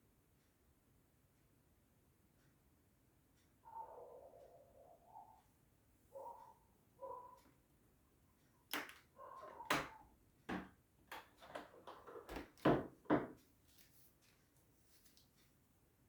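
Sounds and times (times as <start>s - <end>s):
knocking and banging: 9.6s - 13.4s.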